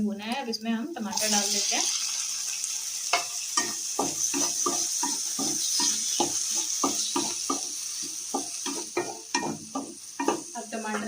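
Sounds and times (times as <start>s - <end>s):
tomatoes sizzling in hot oil: 0.1s - 11.0s
spoon scraping a pan: 3.1s - 11.0s.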